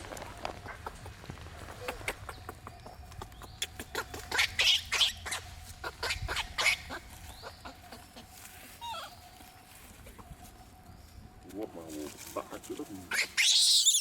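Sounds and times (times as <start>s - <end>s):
monkeys calling: 1.8s - 9.3s, 13.0s - 14.0s.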